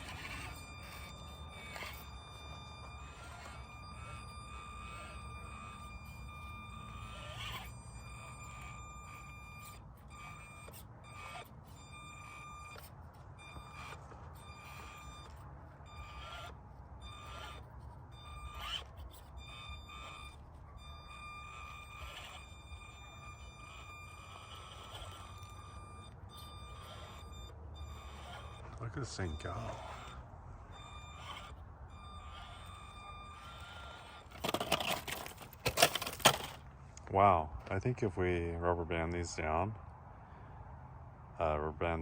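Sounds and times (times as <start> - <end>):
high electric motor whine: 0.0 - 42.0
tyres knocking and scraping ground: 33.6 - 37.1.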